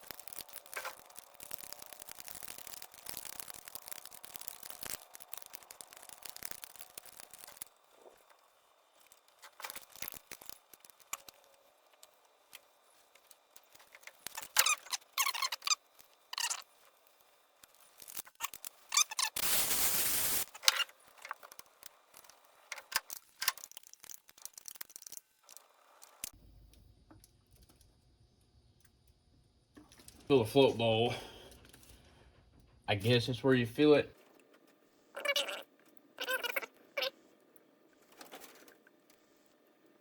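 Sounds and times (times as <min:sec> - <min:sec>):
squeaks and clicks of tools: 0:13.7 - 0:16.9, 0:18.0 - 0:19.4
steady hiss: 0:19.0 - 0:20.6.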